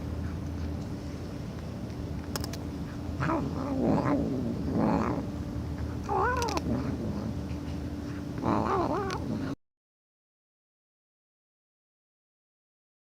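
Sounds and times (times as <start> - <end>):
steady low hum: 0.0 - 9.6
cat yowling: 3.2 - 5.3, 6.1 - 7.3, 8.4 - 9.6.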